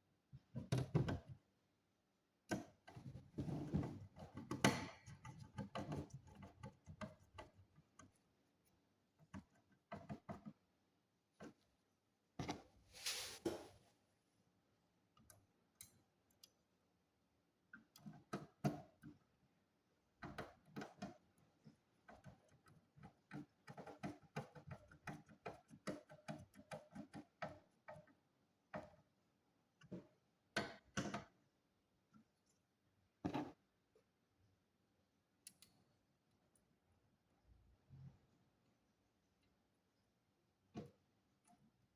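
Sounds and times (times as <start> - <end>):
small irregular clicks and taps: 2.4 - 3.2, 4.1 - 10.8, 15.1 - 16.8, 17.5 - 19.4, 20.0 - 31.4, 35.4 - 36.7.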